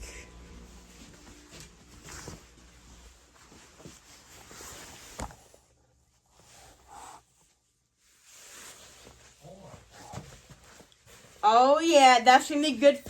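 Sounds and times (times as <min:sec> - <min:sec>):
handling rustles and knocks: 0:00.0 - 0:06.9, 0:08.0 - 0:11.4.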